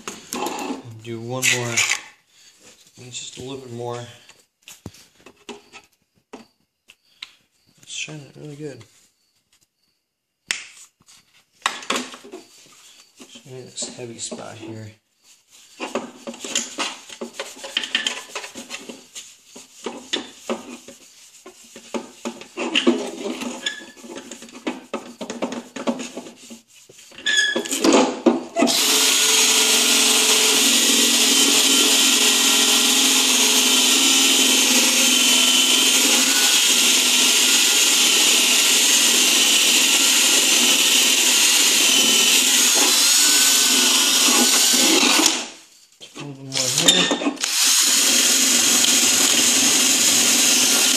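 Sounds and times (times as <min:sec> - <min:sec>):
rubbing and clicking of handling: 0:10.7 - 0:28.2
drill buffing with wavering whine: 0:28.7 - 0:45.3, 0:46.6 - 0:50.9.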